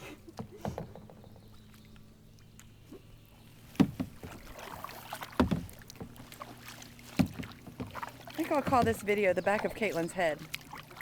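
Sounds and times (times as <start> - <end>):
paddle splashing water: 0.0 - 11.0
paddle knocking on hull: 0.3 - 1.6, 3.6 - 11.0.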